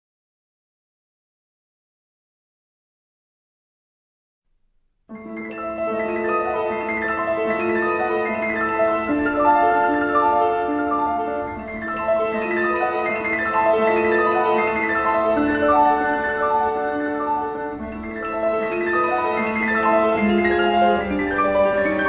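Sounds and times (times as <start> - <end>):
instrumental background music: 5.1 - 22.0.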